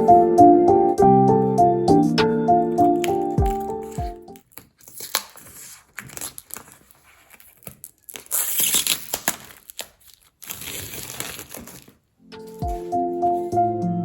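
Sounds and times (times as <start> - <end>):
packaging tearing and crinkling: 2.8 - 12.0.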